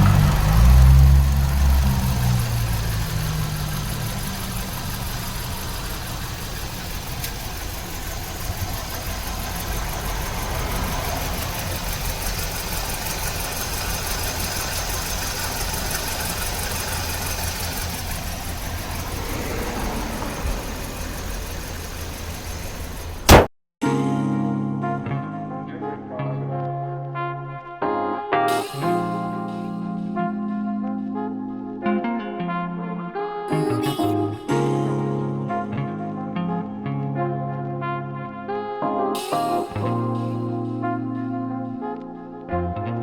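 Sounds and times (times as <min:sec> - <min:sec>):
car engine idling with misfire: 0:00.0 - 0:23.5.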